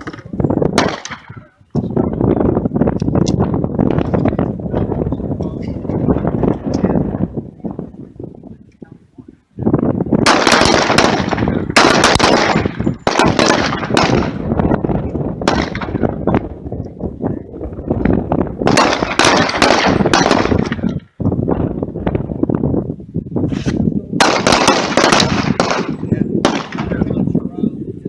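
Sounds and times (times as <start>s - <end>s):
pistols firing rapidly: 0.0s - 1.3s, 10.2s - 14.6s, 15.4s - 16.1s, 18.7s - 20.8s, 24.2s - 27.0s.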